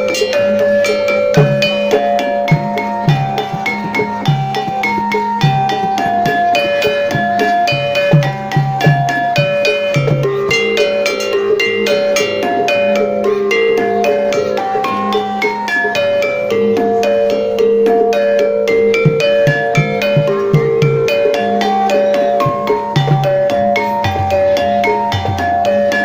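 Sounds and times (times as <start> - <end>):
gamelan metal keys melody: 0.0 - 26.0.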